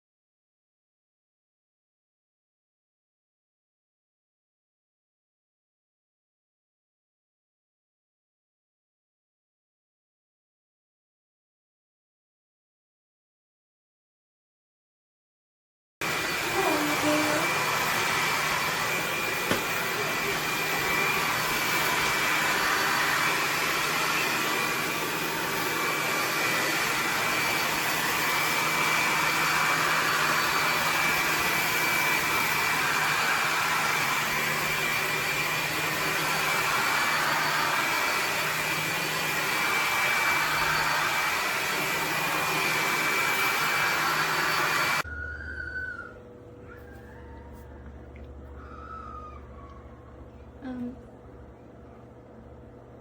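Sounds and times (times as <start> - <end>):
stick vacuum running: 16.0 - 53.0.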